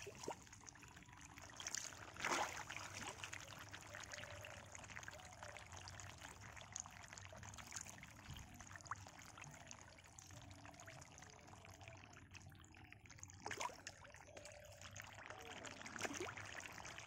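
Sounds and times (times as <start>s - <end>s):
water trickling and splashing: 0.0s - 17.0s.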